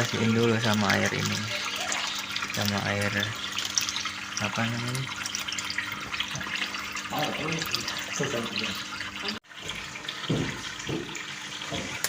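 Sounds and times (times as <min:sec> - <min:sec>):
running water splashing: 0:00.0 - 0:12.0.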